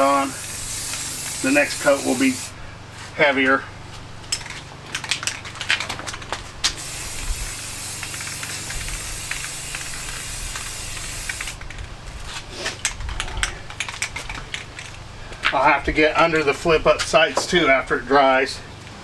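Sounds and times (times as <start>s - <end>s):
spray can hissing: 0.0s - 2.6s, 6.7s - 11.6s
wind on microphone: 7.0s - 7.8s.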